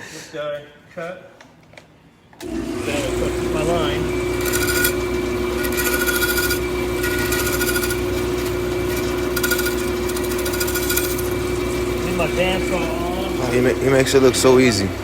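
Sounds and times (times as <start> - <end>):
bandsaw motor humming: 2.4 - 15.0
saw blade rasping through wood: 4.1 - 13.6.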